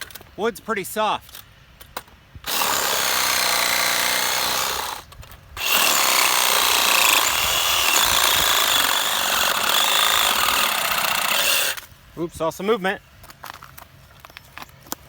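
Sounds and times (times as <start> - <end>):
chainsaw cutting branch: 2.5 - 11.8.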